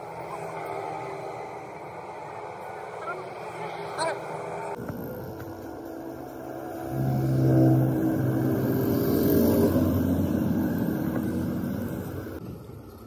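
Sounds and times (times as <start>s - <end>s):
vehicle engine running: 4.7s - 12.4s.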